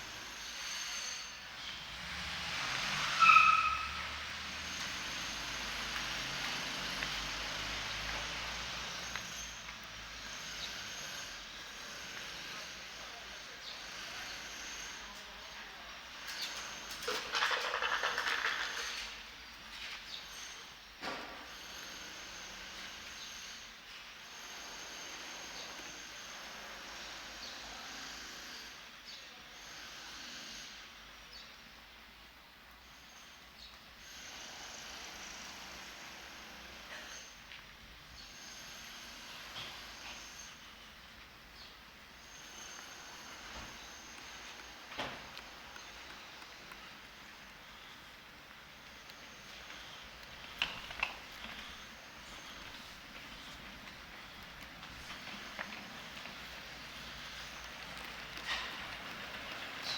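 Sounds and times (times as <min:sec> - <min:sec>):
steady hiss: 0:00.0 - 0:31.5, 0:32.6 - 0:59.9
hum of passing vehicles: 0:01.3 - 0:19.2, 0:34.0 - 0:59.9.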